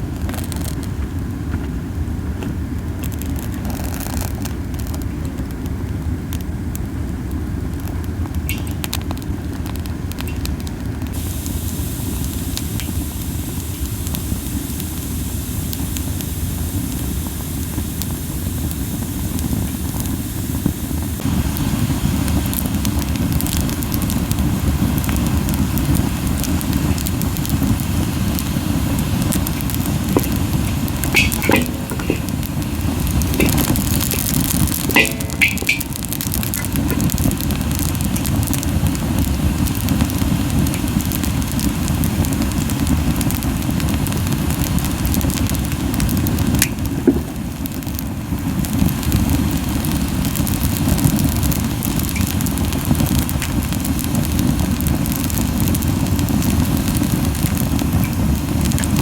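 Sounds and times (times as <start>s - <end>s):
campfire flames rumbling: 0.0s - 59.0s
fire crackling and popping: 0.0s - 59.0s.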